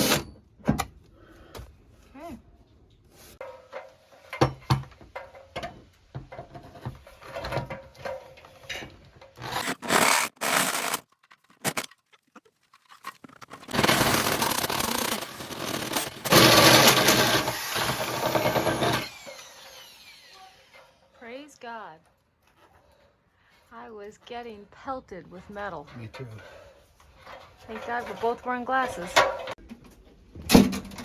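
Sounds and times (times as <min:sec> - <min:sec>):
power drill grinding through metal: 0:00.0 - 0:00.3, 0:13.7 - 0:21.2.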